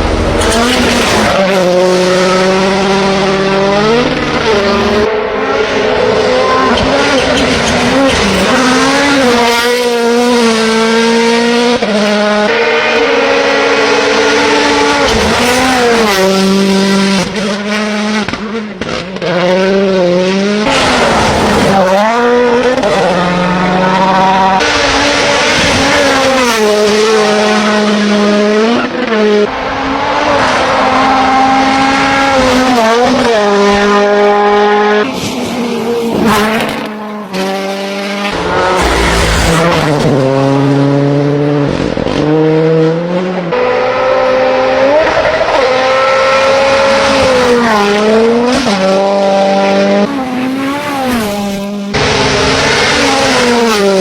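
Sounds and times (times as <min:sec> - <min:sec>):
rally car engines at full throttle: 0:00.0 - 0:54.0.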